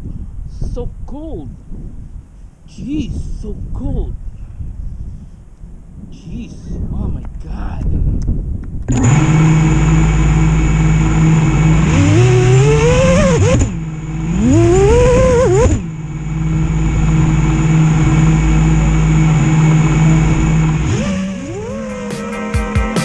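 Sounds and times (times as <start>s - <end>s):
drone motors whining: 8.9s - 23.0s.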